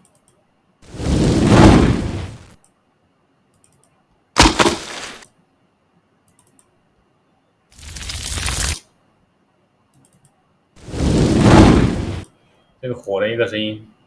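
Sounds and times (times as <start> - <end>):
rushing noise: 0.8 - 2.5, 10.8 - 12.2
sharp crack: 4.4 - 5.2.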